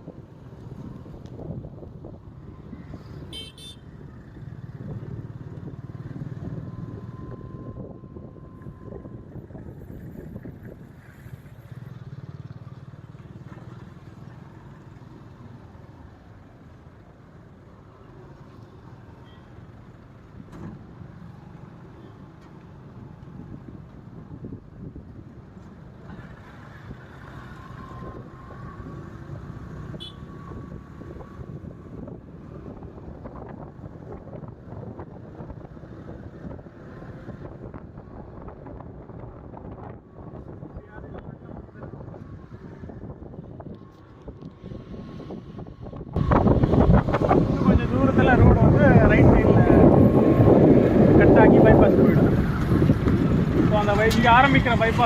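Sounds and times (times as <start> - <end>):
vehicle driving on highway: 0.0 - 55.0
wind buffeting microphone: 30.5 - 55.0.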